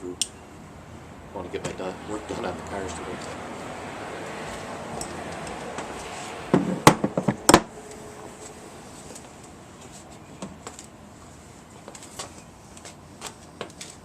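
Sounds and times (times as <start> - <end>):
sharp knocks and clunks: 6.5 - 7.7.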